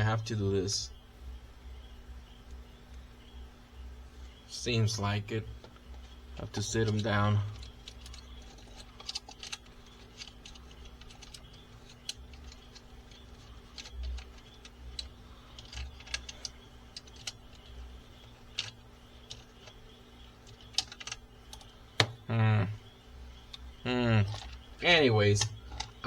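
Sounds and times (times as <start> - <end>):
faint steady hum: 0.0 - 26.0
plastic toy parts clicking: 6.4 - 22.2, 24.2 - 26.0.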